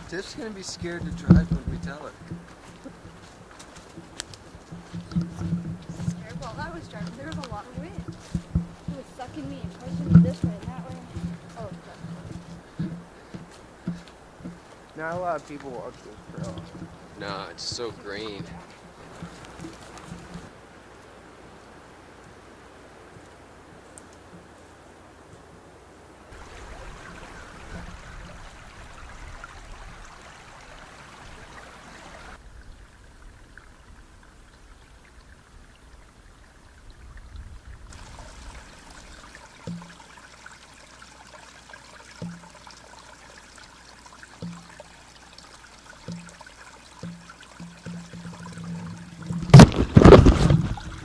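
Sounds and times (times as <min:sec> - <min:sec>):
wind rumble on microphone: 0:00.0 - 0:14.4, 0:26.3 - 0:39.2, 0:48.8 - 0:51.0
creek trickling over rocks: 0:00.0 - 0:51.0.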